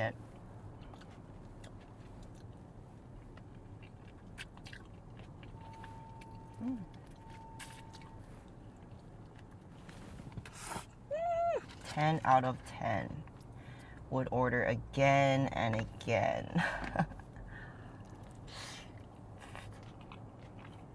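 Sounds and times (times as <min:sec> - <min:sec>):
person chewing food: 0:00.3 - 0:10.9, 0:17.6 - 0:20.9
person humming mm: 0:06.6 - 0:06.9.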